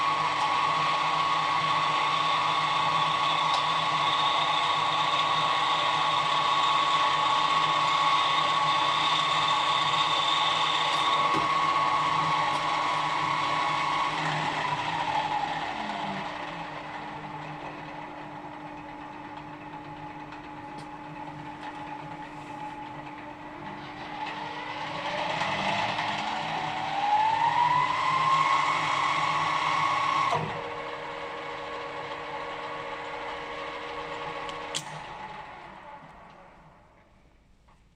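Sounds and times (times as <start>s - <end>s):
pillar drill gear whine: 0.0s - 37.4s
click: 34.5s - 35.0s.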